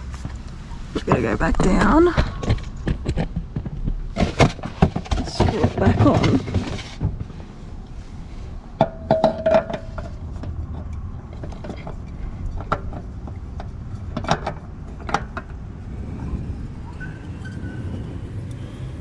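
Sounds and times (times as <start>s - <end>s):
oil filter clicks and knocks: 8.8s - 15.6s.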